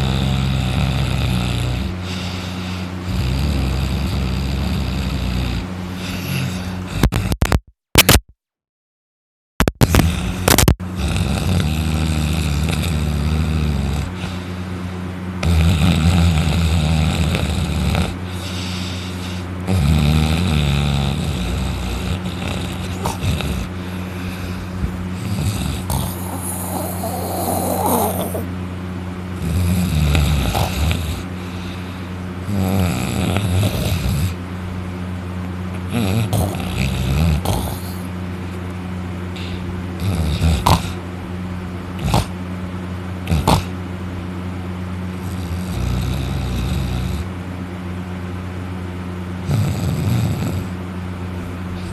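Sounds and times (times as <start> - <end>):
man snoring heavily: 0.0 - 7.5, 9.8 - 28.6, 29.3 - 34.4, 35.7 - 38.2, 39.3 - 41.1, 41.9 - 42.4, 43.2 - 43.8, 45.1 - 47.4, 49.4 - 50.8, 51.7 - 51.9.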